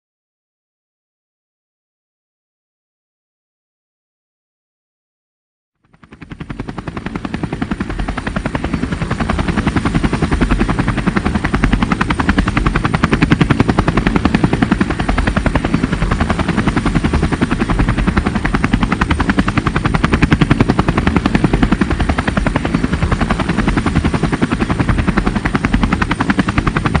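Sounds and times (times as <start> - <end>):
helicopter rotor blades chopping: 5.8 - 27.0.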